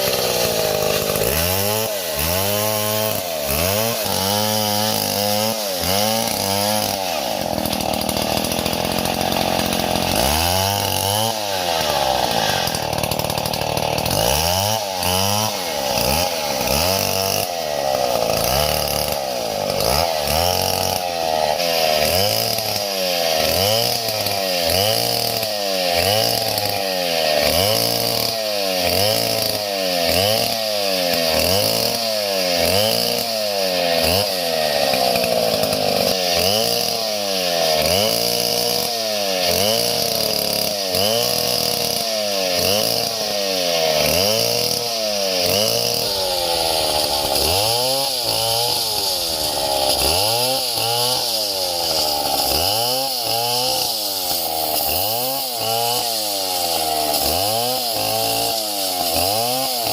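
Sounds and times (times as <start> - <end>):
chainsaw engine running: 0.0 - 59.9.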